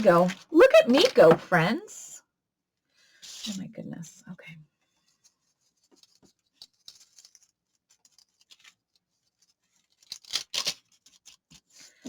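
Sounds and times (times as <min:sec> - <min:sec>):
paper rustling: 0:00.0 - 0:01.8, 0:05.0 - 0:12.0
scissors snipping paper: 0:06.0 - 0:11.7.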